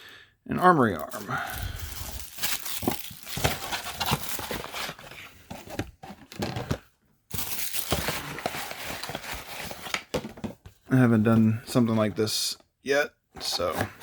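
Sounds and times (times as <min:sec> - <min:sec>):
packaging crinkling and rustling: 0:01.0 - 0:10.4.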